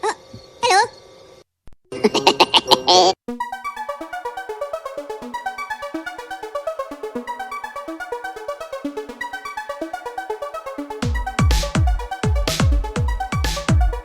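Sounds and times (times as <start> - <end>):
electronic synthesizer music: 3.3 - 14.0.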